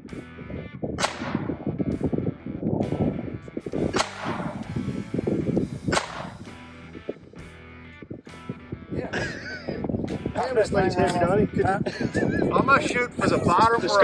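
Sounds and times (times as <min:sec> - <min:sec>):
guitar background music: 0:00.0 - 0:14.0
gunshots: 0:01.0 - 0:01.8, 0:03.8 - 0:05.0, 0:05.9 - 0:06.6.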